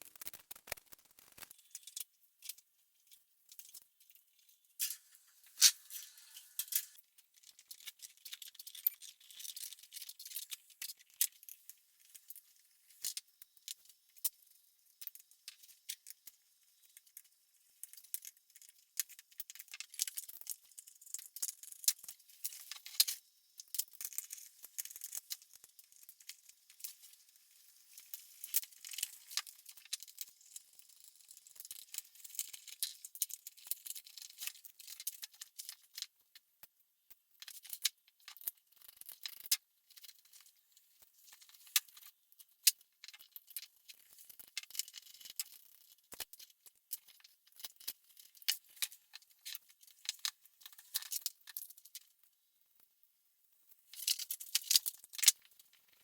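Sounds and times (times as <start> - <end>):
tools and small parts clicking: 0.0 - 2.6, 4.8 - 11.5.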